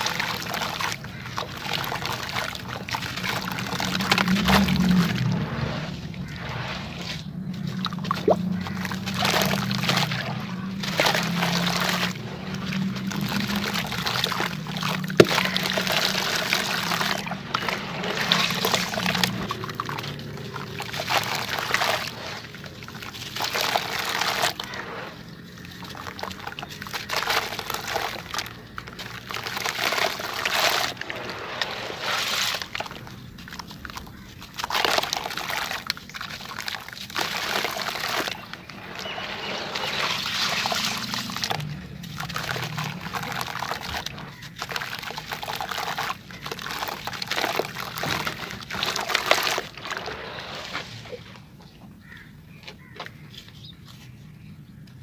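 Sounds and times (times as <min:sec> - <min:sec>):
wet sand falling into water: 0:00.0 - 0:51.3
low hum: 0:02.7 - 0:23.9.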